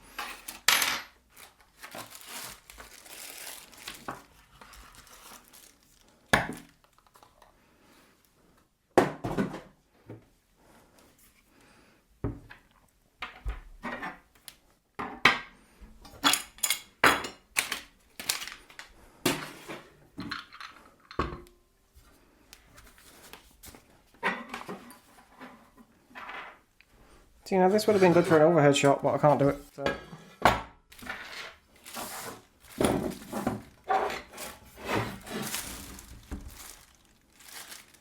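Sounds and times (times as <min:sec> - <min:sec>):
metal parts clinking and clattering: 0:16.2 - 0:17.0.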